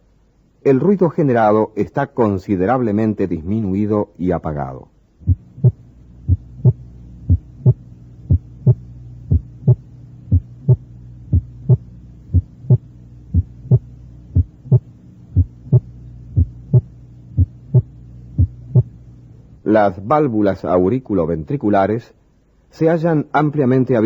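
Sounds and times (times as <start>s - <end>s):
low steady hum: 0.0s - 24.0s
heartbeat through stethoscope: 5.2s - 18.9s.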